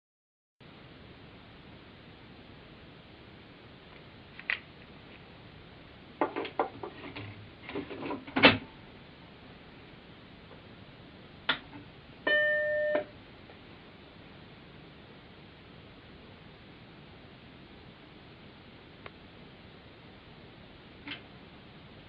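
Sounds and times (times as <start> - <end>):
short electronic beep: 12.3 - 13.1.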